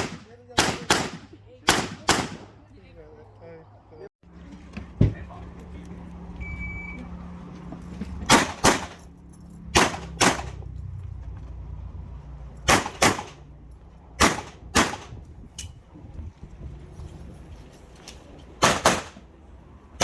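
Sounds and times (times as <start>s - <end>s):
handgun shots in quick pairs: 0.0s - 2.5s, 8.3s - 9.0s, 9.7s - 10.6s, 12.7s - 13.4s, 14.2s - 15.2s, 18.6s - 19.2s.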